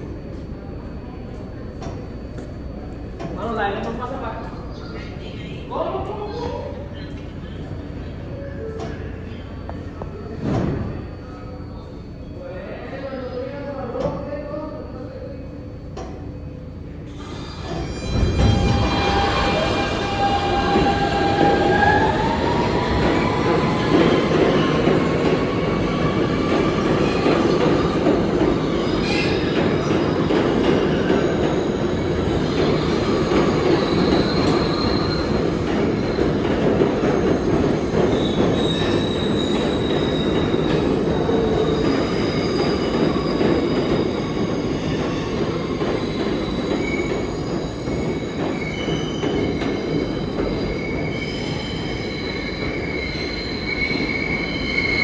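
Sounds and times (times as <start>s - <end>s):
rumble of train wheels on rail: 12.8s - 51.2s
steel wheel squeals: 17.1s - 55.0s.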